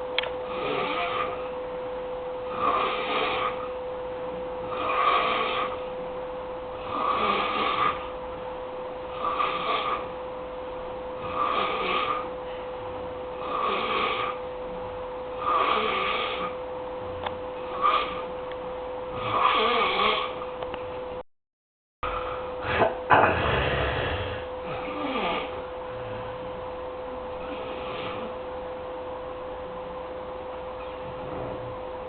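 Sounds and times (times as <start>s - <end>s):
steady hum: 0.0s - 21.2s, 22.0s - 32.0s
snoring: 0.4s - 1.5s, 2.5s - 3.8s, 4.6s - 5.8s, 6.8s - 8.1s, 9.1s - 10.1s, 11.2s - 12.3s, 13.3s - 14.4s, 15.3s - 16.6s, 17.6s - 18.3s, 19.1s - 20.4s, 22.2s - 26.4s, 27.4s - 28.3s.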